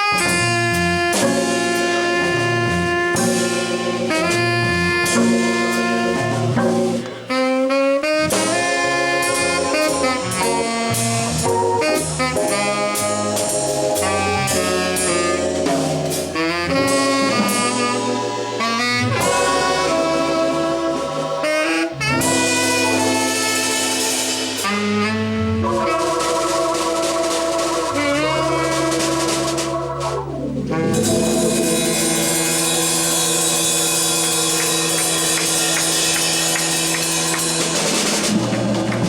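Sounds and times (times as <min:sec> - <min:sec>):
tenor saxophone melody: 0:00.0 - 0:38.4
drum kit: 0:00.0 - 0:39.0
organ: 0:00.1 - 0:07.1, 0:08.3 - 0:39.0.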